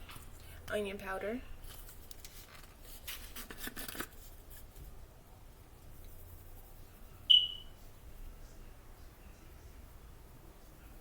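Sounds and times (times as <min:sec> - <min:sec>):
short high beep: 0:07.3 - 0:07.8.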